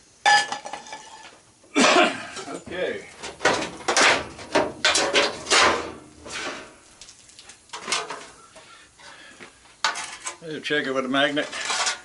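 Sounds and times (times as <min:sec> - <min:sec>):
machine parts scraping and clattering: 0:11.3 - 0:12.0.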